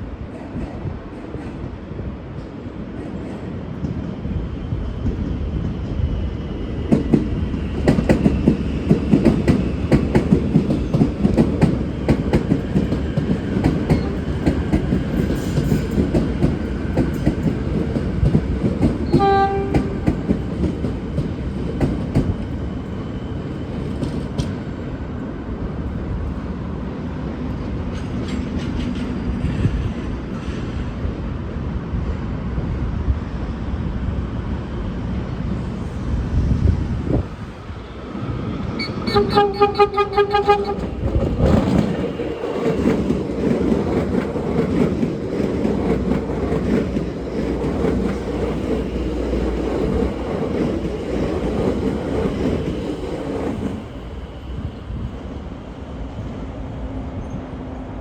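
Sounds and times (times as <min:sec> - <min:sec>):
train horn blast: 0:19.1 - 0:20.1, 0:38.8 - 0:41.0
train wheels clicking over rail joints: 0:39.1 - 0:53.9.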